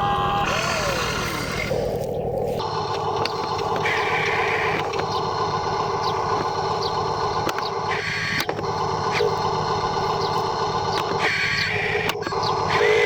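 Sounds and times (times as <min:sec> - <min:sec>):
high-pitched motor whine: 0:00.0 - 0:13.0
model machines whirring: 0:00.0 - 0:13.0
mechanical clicks: 0:02.6 - 0:13.0.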